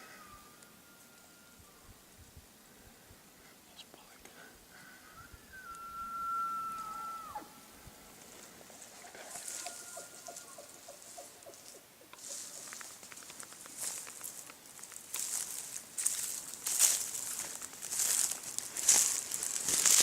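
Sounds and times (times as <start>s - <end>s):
elk bugling: 4.7s - 7.7s
brush rustling: 7.8s - 20.0s.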